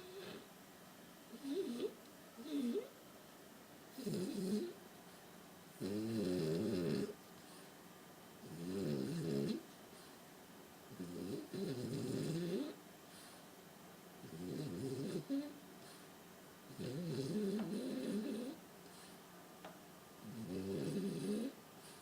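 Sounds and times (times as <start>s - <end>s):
dog snoring: 0.0s - 0.5s, 1.3s - 3.0s, 3.9s - 4.8s, 5.8s - 7.2s, 8.4s - 9.6s, 10.9s - 12.8s, 14.2s - 16.0s, 16.7s - 19.1s, 20.2s - 22.0s
quiet breaths: 6.4s - 8.5s, 9.4s - 10.4s, 11.3s - 19.5s, 20.6s - 22.0s.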